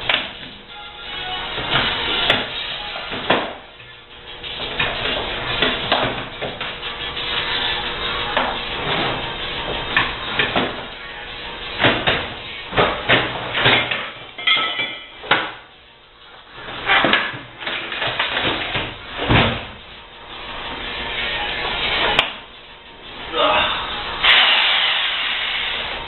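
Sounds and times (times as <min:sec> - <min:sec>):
dishwasher parts knocking and clanking: 0:01.6 - 0:03.9, 0:04.6 - 0:06.7, 0:09.9 - 0:10.9, 0:11.8 - 0:15.6, 0:16.8 - 0:19.8.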